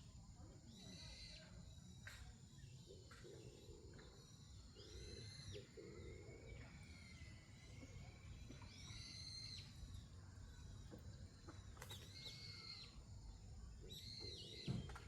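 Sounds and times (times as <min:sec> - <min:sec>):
thin wavering bird whistle: 0:08.7 - 0:09.9.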